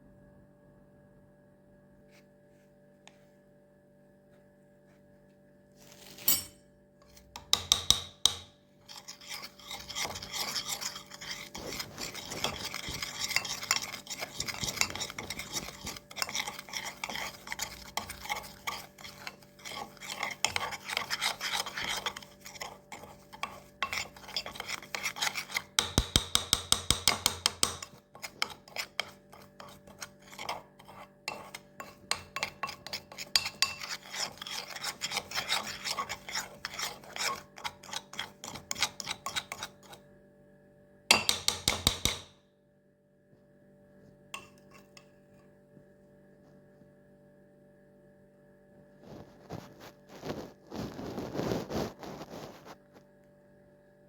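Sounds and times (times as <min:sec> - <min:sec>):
spoon scraping in a dish: 0:05.8 - 0:40.1, 0:41.1 - 0:42.4, 0:44.4 - 0:45.6, 0:49.1 - 0:52.9.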